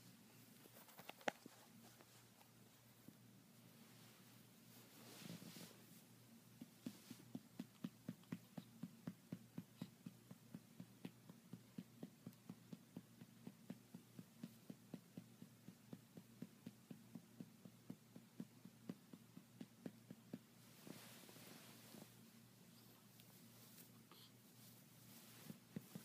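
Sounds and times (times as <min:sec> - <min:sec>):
soft pats on baby's back: 0:22.9 - 0:26.0.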